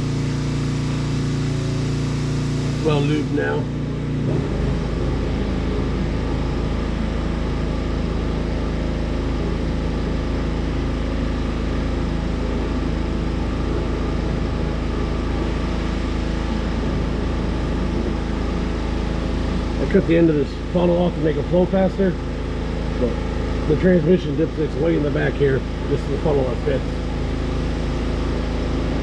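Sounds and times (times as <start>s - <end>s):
vehicle engine idling: 0.0s - 29.0s.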